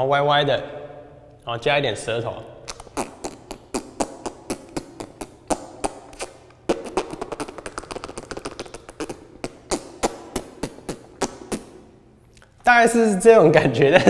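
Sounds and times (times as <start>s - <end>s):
man talking: 1.4s - 2.5s, 12.6s - 14.0s
beatbox lip roll: 2.6s - 12.6s.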